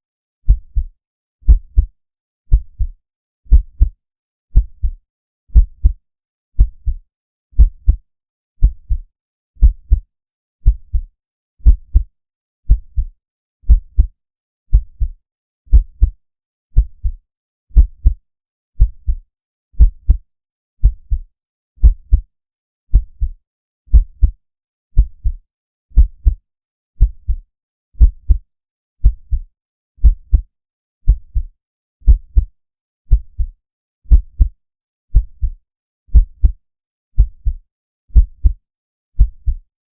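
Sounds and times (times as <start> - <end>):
heartbeat thumps: 1.5 - 1.9, 2.5 - 2.9, 3.5 - 3.9, 4.6 - 5.0, 5.6 - 6.0, 6.6 - 7.0, 7.6 - 8.0, 8.6 - 9.0, 9.6 - 12.1, 12.7 - 13.1, 13.7 - 14.1, 14.7 - 15.1, 15.7 - 16.2, 17.8 - 18.2, 19.8 - 20.2, 20.8 - 21.2, 21.8 - 22.3, 22.9 - 23.3, 23.9 - 24.4, 26.0 - 26.4, 28.0 - 28.4, 29.0 - 29.4, 30.0 - 30.5, 31.1 - 31.5, 32.1 - 32.5, 33.1 - 33.5, 34.1 - 34.5, 35.1 - 36.6, 37.2 - 37.6, 38.2 - 38.6, 39.2 - 39.6.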